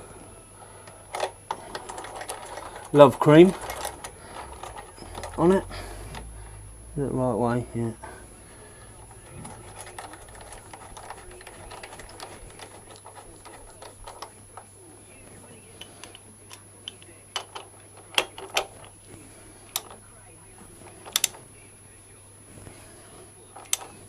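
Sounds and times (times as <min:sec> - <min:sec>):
metallic ticks and rattles: 0:08.9 - 0:14.4, 0:20.8 - 0:21.4.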